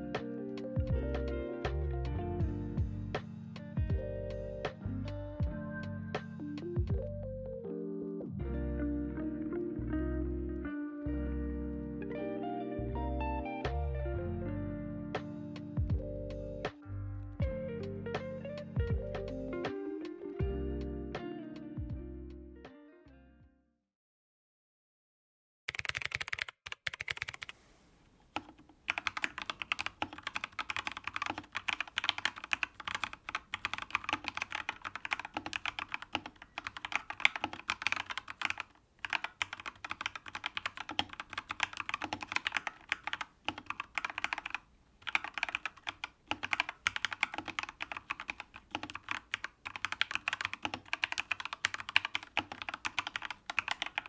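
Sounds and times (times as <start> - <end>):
mechanical keyboard typing: 25.7 - 27.5, 28.3 - 54.0.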